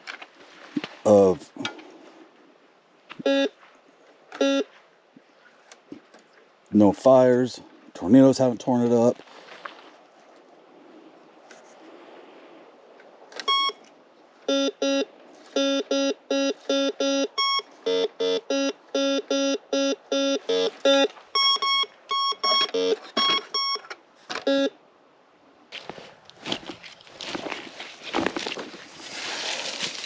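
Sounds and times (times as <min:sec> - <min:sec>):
metal detector beeping: 0:03.2 - 0:03.5, 0:04.3 - 0:04.7, 0:13.4 - 0:13.8, 0:14.5 - 0:24.7.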